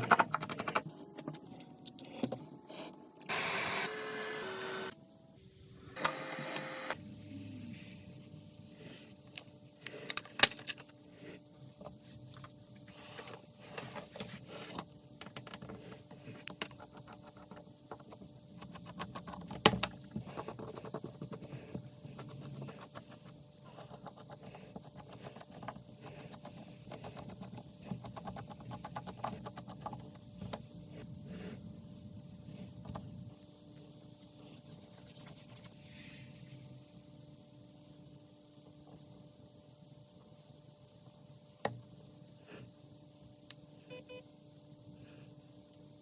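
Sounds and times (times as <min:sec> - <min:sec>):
faint steady hum: 0:00.0 - 0:46.0.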